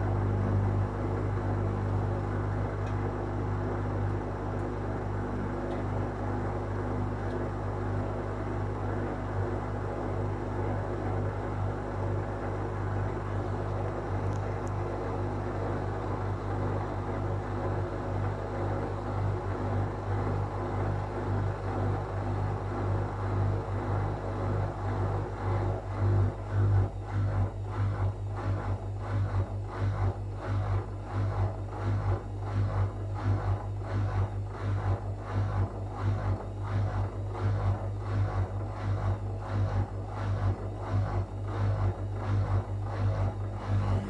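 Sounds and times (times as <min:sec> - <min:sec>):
washing machine drum spinning: 0:40.1 - 0:44.0.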